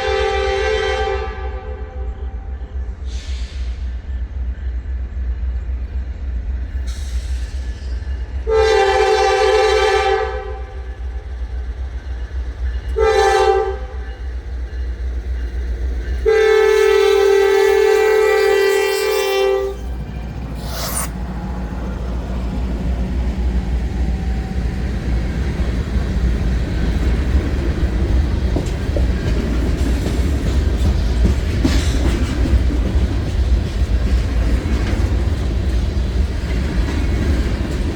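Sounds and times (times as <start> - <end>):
locomotive air horn: 0.0 - 2.1, 8.5 - 10.7, 13.0 - 14.0, 16.2 - 19.8
train rumbling past: 0.0 - 37.9
wheels clacking over rail joints: 25.0 - 37.9.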